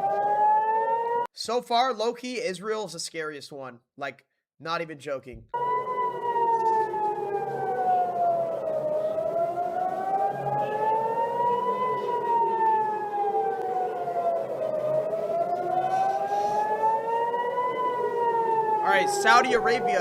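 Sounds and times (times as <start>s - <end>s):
warning siren wailing: 0.0s - 1.3s, 5.5s - 20.0s.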